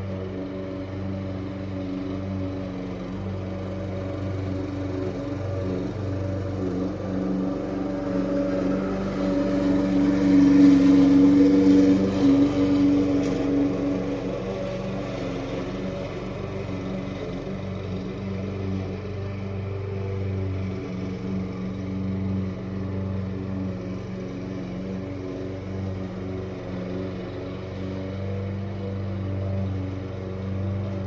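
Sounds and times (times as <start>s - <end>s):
small gasoline engine running: 0.0s - 31.0s.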